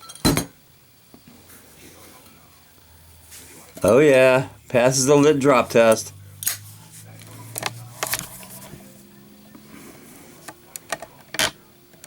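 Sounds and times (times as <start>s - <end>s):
lighter clicking: 6.4s - 6.6s.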